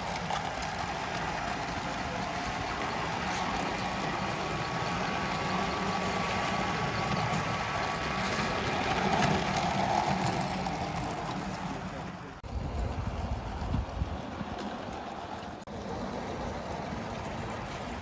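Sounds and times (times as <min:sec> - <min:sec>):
light track clicks: 0:00.0 - 0:12.4
model train rushing: 0:00.0 - 0:18.0.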